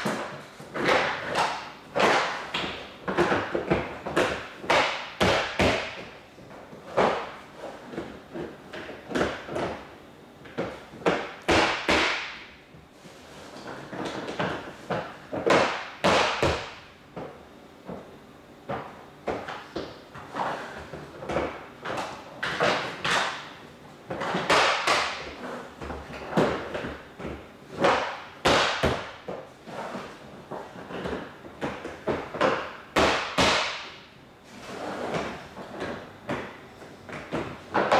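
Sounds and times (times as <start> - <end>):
plastic floor tiles knocking: 0.0 - 6.1, 13.7 - 18.1, 24.1 - 29.4.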